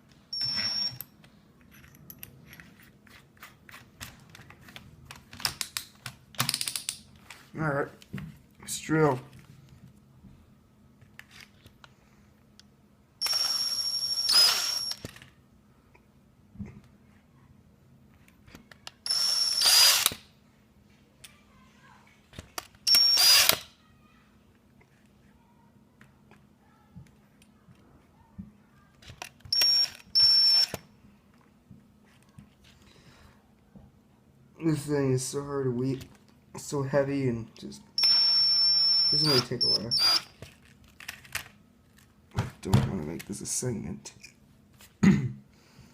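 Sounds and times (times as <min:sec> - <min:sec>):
power drill whine: 0:13.2 - 0:15.0, 0:19.1 - 0:20.1, 0:22.9 - 0:23.6, 0:29.6 - 0:30.7, 0:38.0 - 0:40.3.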